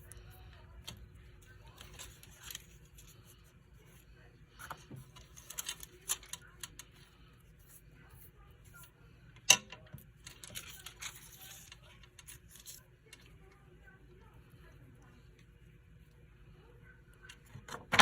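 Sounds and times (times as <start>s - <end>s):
paper and foil rustling: 0.9s - 3.4s, 4.8s - 6.8s, 10.2s - 13.2s.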